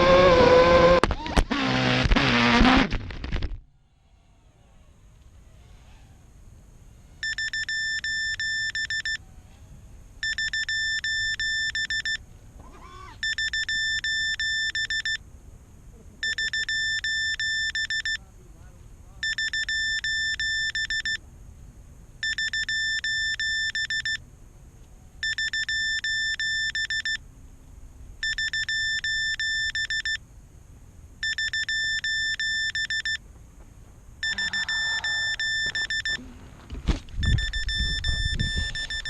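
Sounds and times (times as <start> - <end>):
electronic ringer trilling: 7.2 - 9.2, 10.2 - 12.2, 13.2 - 15.2, 16.2 - 18.2, 19.2 - 21.2, 22.2 - 24.2, 25.2 - 27.2, 28.2 - 30.2, 31.2 - 33.2, 34.2 - 36.2, 37.2 - 39.0.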